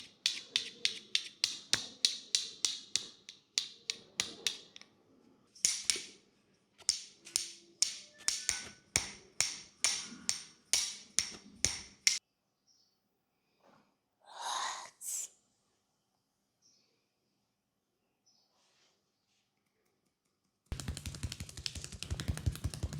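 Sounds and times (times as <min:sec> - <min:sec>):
hand strikes of head massage: 0:06.8 - 0:12.2, 0:20.7 - 0:22.9.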